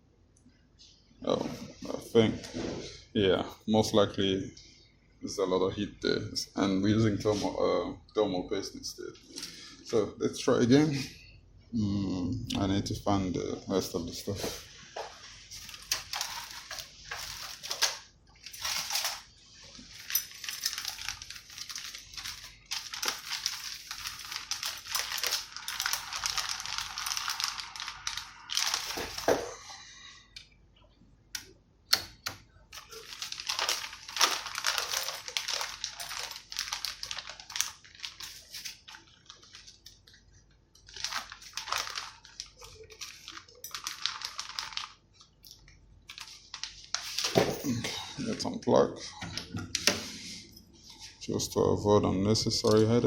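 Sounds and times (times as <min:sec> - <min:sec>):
rustling of things searched: 0:13.8 - 0:29.7, 0:32.7 - 0:45.5, 0:46.1 - 0:51.4.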